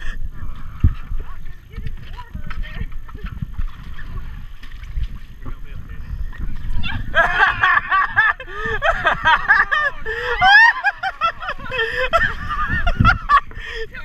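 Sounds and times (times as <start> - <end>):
low rumbling noise: 0.0 - 14.0
people laughing and squealing: 6.7 - 13.9.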